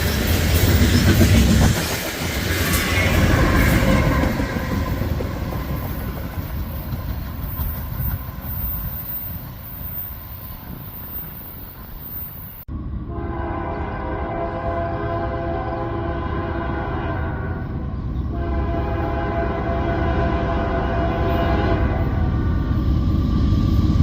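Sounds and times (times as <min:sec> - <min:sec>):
freight train wheels on rails: 0:00.0 - 0:24.0
locomotive air horn chord: 0:13.1 - 0:22.4.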